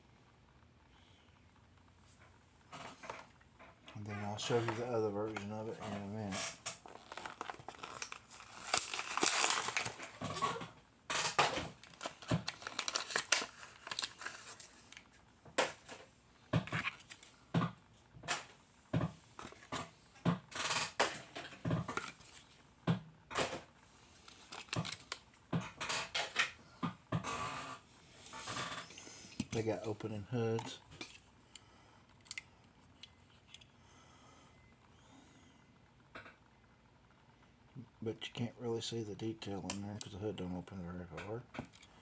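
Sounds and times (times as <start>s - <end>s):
packaging crinkling: 4.2s - 16.0s, 23.4s - 25.3s.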